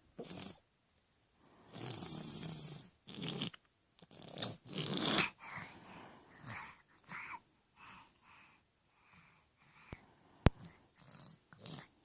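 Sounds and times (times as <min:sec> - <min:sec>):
person snoring: 0:01.7 - 0:03.5.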